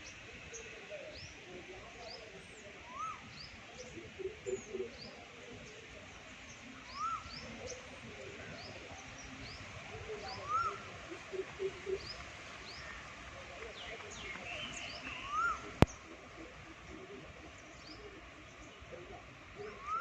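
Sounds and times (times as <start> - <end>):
rising and falling bird call: 2.8 - 5.2, 6.8 - 7.9, 10.3 - 13.1, 13.7 - 16.2, 19.5 - 20.0.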